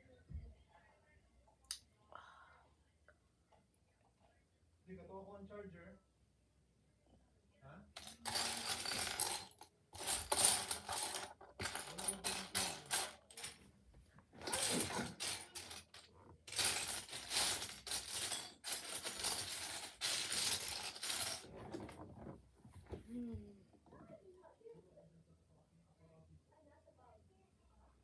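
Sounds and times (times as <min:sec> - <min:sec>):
plastic pieces clattering: 0:08.0 - 0:13.6, 0:14.3 - 0:22.4.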